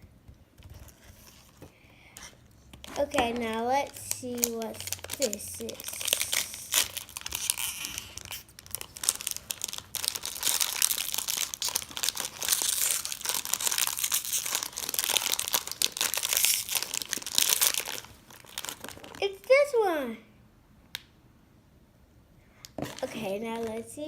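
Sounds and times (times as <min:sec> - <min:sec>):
packaging crinkling and tearing: 0:02.8 - 0:19.6, 0:22.8 - 0:23.9.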